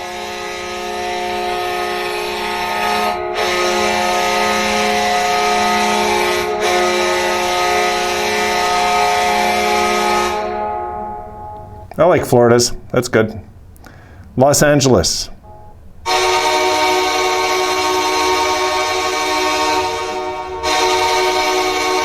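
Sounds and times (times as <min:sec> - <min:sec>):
arena goal horn blasts: 0:00.0 - 0:12.0, 0:15.4 - 0:22.0.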